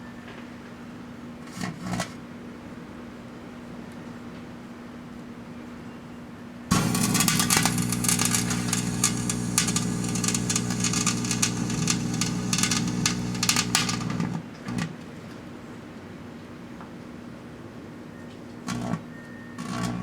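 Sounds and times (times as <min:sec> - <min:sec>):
fireworks crackling and popping: 0:06.7 - 0:14.4
microwave oven humming: 0:06.7 - 0:14.9.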